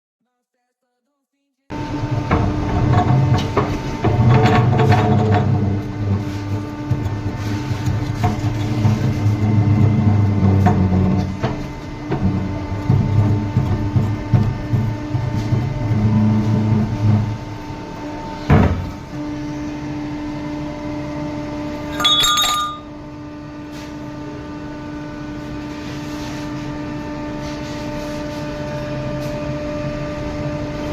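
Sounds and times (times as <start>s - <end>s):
metal-on-metal clink: 21.9s - 22.9s.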